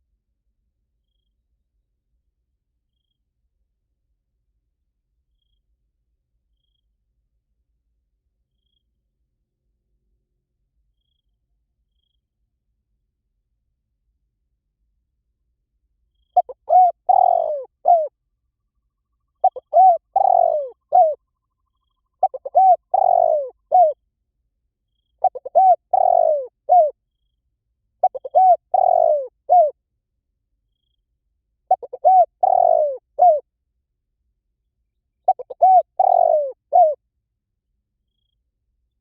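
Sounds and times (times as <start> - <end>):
dove cooing: 16.4 - 18.1, 19.4 - 21.2, 22.2 - 24.0, 25.2 - 27.0, 28.0 - 29.7, 31.7 - 33.4, 35.3 - 37.0.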